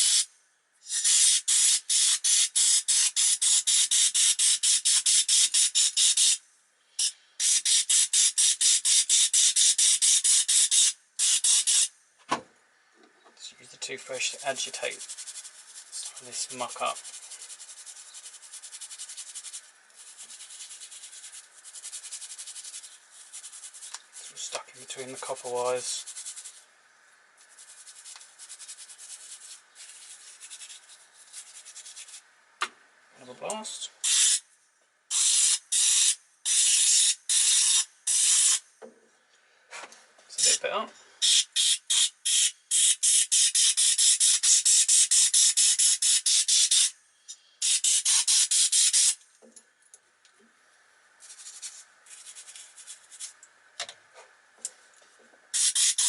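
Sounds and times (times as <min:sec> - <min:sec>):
toothbrush scrubbing: 0:14.5 - 0:24.4, 0:25.4 - 0:26.6, 0:27.4 - 0:32.2, 0:51.2 - 0:53.4.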